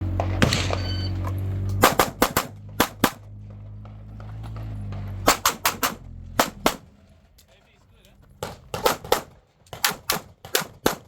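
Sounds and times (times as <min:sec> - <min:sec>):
pistol shots: 0:00.2 - 0:01.1, 0:01.8 - 0:03.3, 0:05.2 - 0:07.0, 0:08.4 - 0:11.0.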